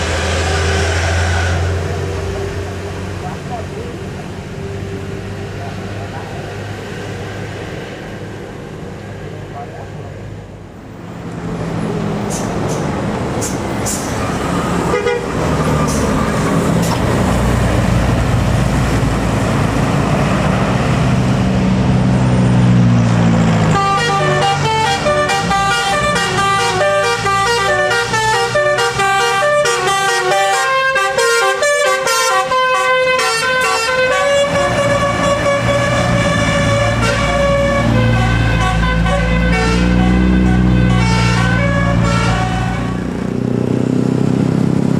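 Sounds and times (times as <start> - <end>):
bus engine revving: 0.0 - 44.9
musical bus horn tune: 14.8 - 15.5, 23.7 - 43.1.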